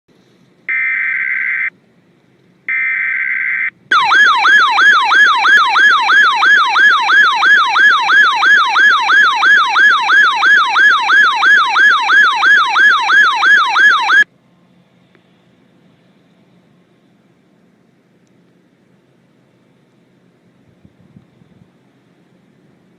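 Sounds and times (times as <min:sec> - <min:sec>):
electronic alert siren warbling: 0:00.7 - 0:01.7, 0:02.7 - 0:14.2
harsh buzzing data tone: 0:00.7 - 0:01.7, 0:02.7 - 0:14.2.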